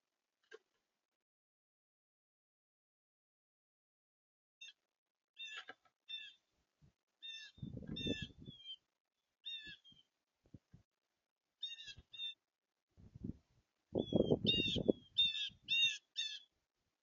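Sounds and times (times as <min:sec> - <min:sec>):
birds calling: 0:05.4 - 0:06.4, 0:07.2 - 0:08.8, 0:09.4 - 0:10.1, 0:11.6 - 0:12.4, 0:14.0 - 0:16.5.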